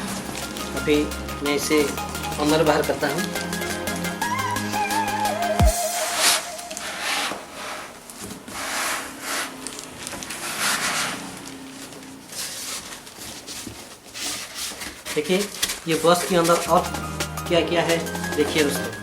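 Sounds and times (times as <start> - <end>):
background music: 0.0 - 7.3, 16.7 - 19.0
cardboard scraping: 5.9 - 18.7.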